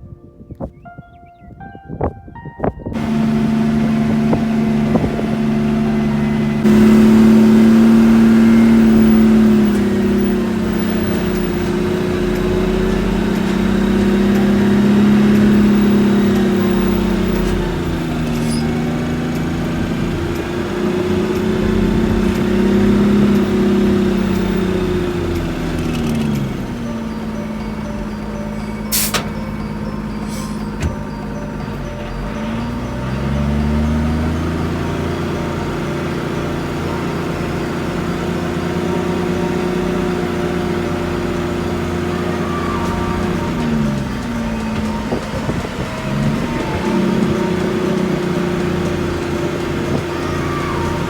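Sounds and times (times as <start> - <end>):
vehicle engine running: 2.9 - 51.0.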